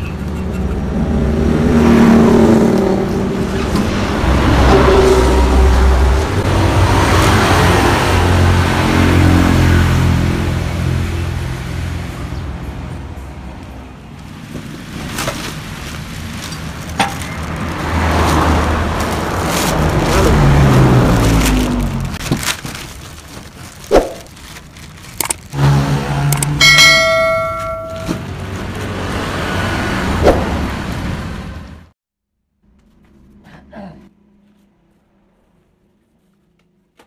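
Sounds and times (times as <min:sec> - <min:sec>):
motorcycle engine revving: 0:25.5 - 0:28.1
bell-like ringing tone: 0:26.6 - 0:28.2.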